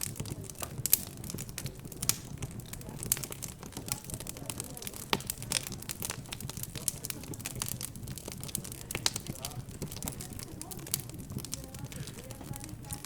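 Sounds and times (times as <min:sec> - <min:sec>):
murmur of background chatter: 0:00.0 - 0:13.0
wood fire crackling and popping: 0:00.0 - 0:13.0.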